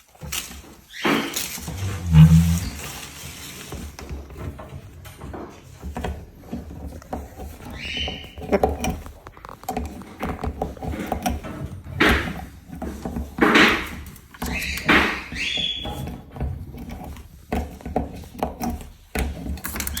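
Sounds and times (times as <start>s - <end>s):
cockatoo harsh screeches: 0.9s - 3.0s.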